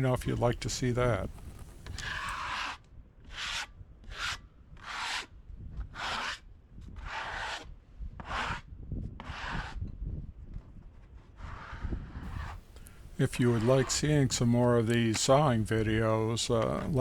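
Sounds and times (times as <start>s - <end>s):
brushing strokes on rough surface: 0.0s - 5.3s, 5.9s - 6.4s, 9.2s - 9.8s, 11.0s - 17.0s.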